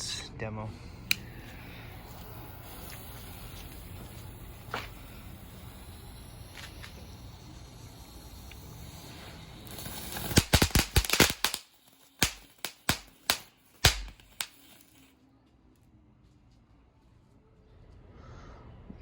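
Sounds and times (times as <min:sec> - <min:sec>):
firework hissing: 0:00.7 - 0:15.1
firecracker pops: 0:09.7 - 0:15.1.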